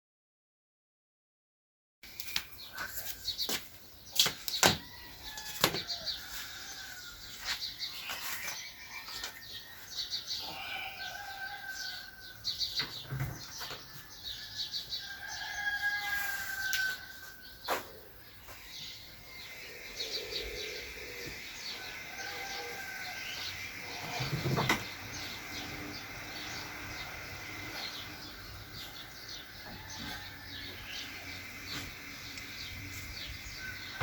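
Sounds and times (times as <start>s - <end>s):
birds chirping: 2.0s - 34.0s
long held bird call: 18.4s - 34.0s.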